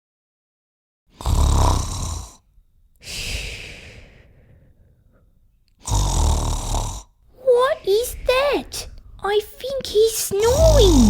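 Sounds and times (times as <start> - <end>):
deep rattling snore: 1.2 - 2.4, 5.8 - 7.2
breathy exhale: 3.0 - 5.3.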